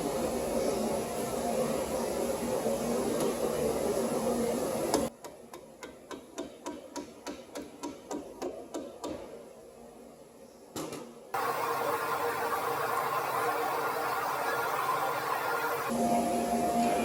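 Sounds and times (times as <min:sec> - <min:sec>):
steady background hum: 0:08.3 - 0:17.0.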